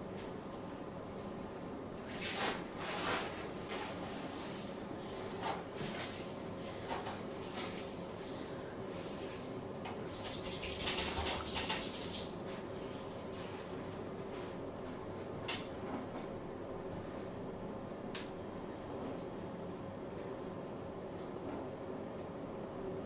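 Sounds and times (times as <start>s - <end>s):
hands rubbing skin: 10.1s - 12.4s.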